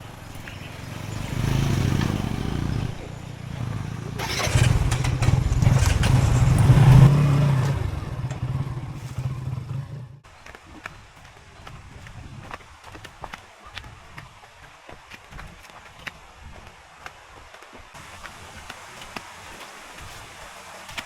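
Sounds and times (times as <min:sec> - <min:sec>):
motorcycle engine running: 0:00.0 - 0:10.2.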